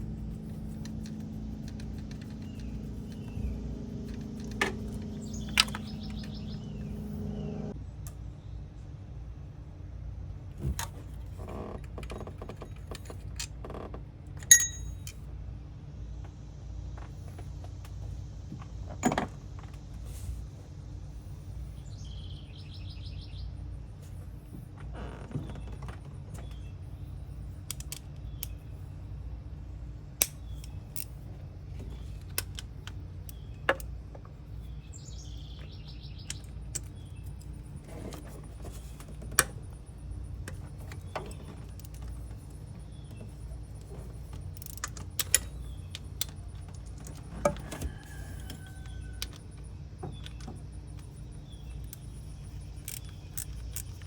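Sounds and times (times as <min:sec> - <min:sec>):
steady low hum: 0:00.0 - 0:54.0
birds chirping: 0:00.1 - 0:07.8, 0:31.8 - 0:39.0
metal tools and bolts clinking: 0:14.4 - 0:15.2.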